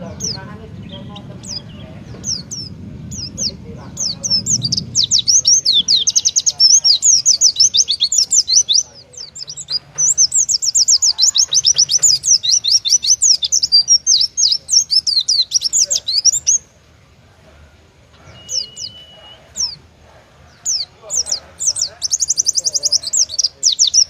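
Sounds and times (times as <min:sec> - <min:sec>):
bird singing rapid high chirps: 0:00.0 - 0:16.8, 0:18.1 - 0:19.9, 0:20.5 - 0:24.0
bird whistle: 0:18.2 - 0:19.8.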